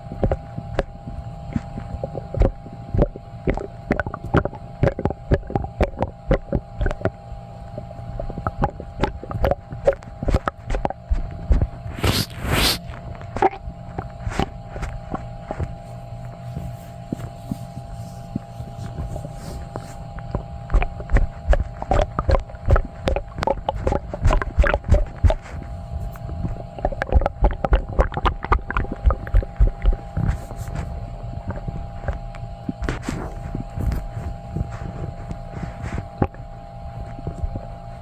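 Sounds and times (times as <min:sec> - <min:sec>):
steady hum: 0:00.0 - 0:38.0
stomach gurgling: 0:00.0 - 0:38.0.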